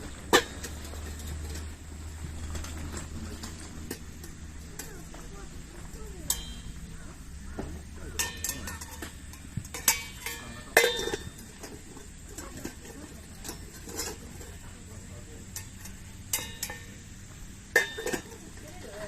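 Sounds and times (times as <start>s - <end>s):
metal pieces clinking: 8.2s - 14.7s.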